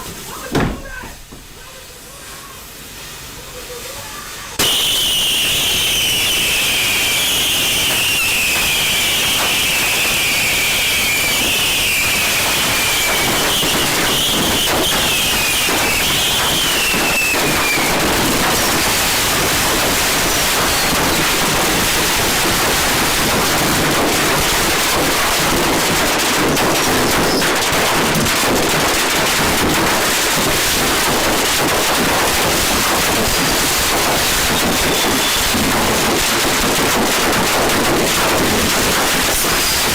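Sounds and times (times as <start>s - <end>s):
dense firework crackle: 3.5s - 39.9s.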